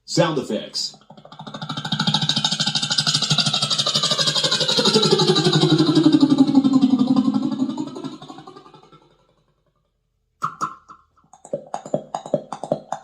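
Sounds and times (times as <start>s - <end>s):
person imitating motorcycle engine: 0.1s - 9.5s.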